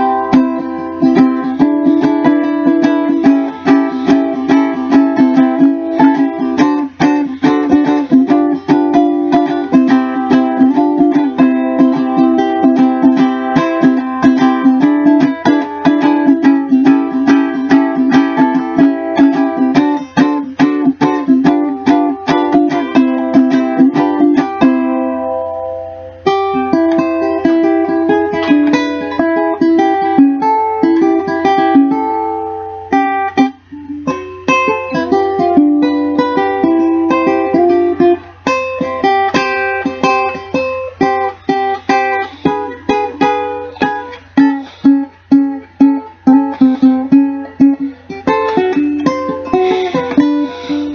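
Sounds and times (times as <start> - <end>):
ukulele strumming and picking: 0.0 - 50.9.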